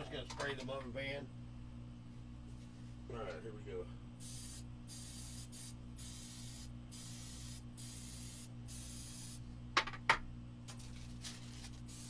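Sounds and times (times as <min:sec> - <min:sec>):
aerosol spray hissing: 0:04.2 - 0:09.4.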